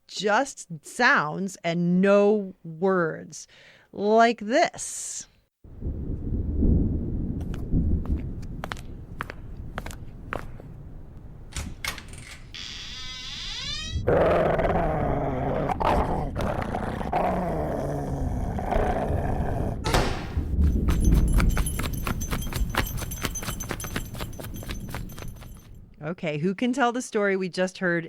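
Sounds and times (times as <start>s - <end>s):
footsteps approaching: 7.4s - 10.8s, 19.9s - 25.8s
door creaking open: 11.5s - 14.2s, 19.8s - 21.4s
dog growling and barking: 14.0s - 19.9s
door slamming: 19.8s - 20.8s
running footsteps: 19.9s - 25.8s.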